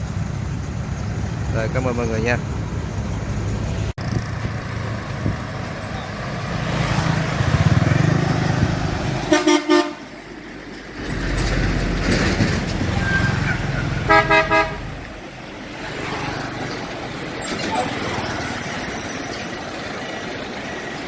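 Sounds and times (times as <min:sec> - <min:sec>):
low engine noise: 0:00.0 - 0:21.0
vehicle horn tooting: 0:09.3 - 0:10.1, 0:13.0 - 0:14.9.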